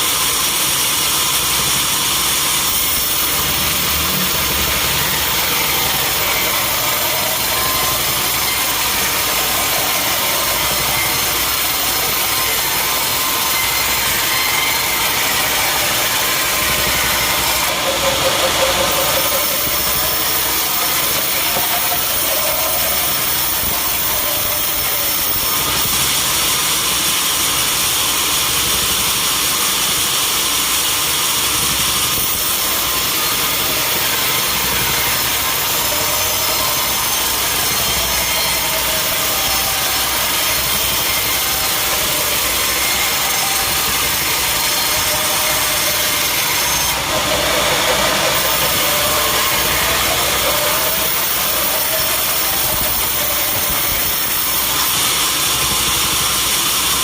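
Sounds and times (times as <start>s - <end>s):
sawmill saw droning: 0.0s - 57.0s.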